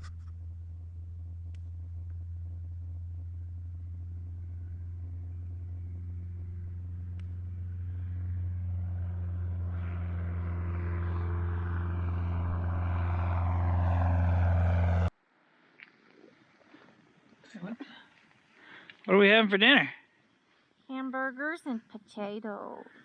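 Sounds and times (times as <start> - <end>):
propeller airplane engine: 0.0 - 15.1.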